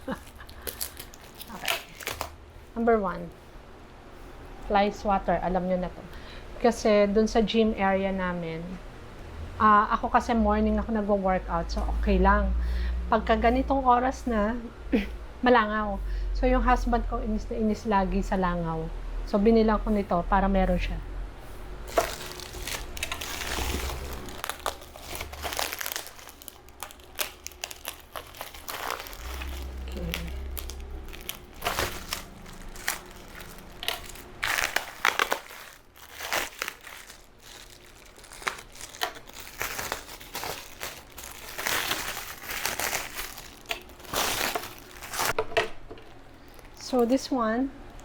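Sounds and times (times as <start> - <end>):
packaging crinkling: 0.0 - 2.4, 21.8 - 45.4, 46.0 - 47.2.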